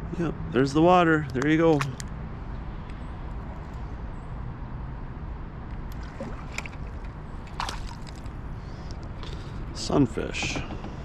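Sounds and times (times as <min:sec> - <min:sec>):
outdoor low rumble: 0:05.3 - 0:11.0.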